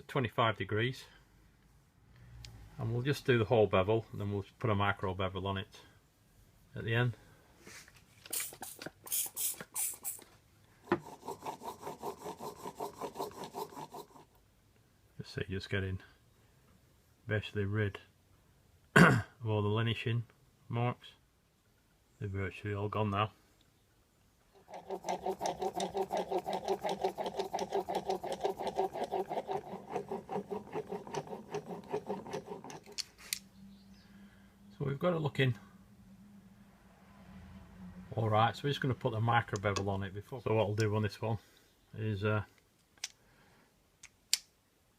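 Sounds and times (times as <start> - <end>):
blade scraping on sharpening stone: 24.7 - 33.2.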